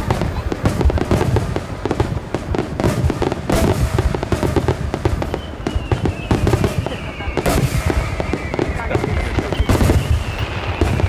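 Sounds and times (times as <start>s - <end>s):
firework booms and crackles: 0.0s - 11.0s
falling firework whistle: 3.5s - 11.0s.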